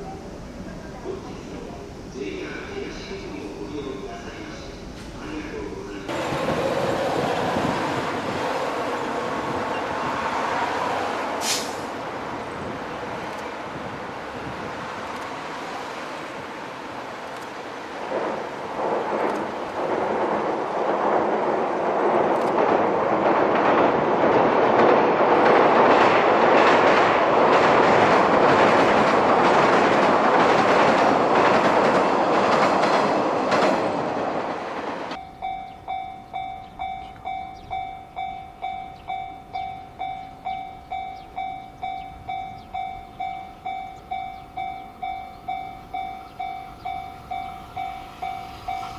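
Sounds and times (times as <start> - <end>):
train wheels clattering: 22.2 - 48.9
level crossing warning bell: 35.2 - 48.9.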